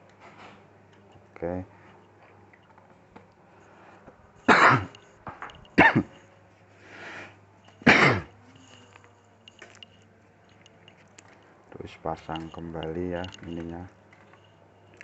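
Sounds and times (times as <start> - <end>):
person coughing: 4.5 - 4.9, 5.8 - 6.2, 7.8 - 8.3.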